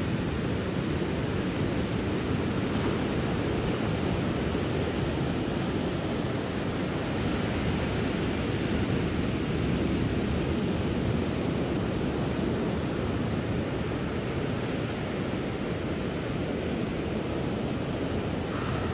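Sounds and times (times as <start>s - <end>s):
ocean waves breaking: 18.2s - 18.9s.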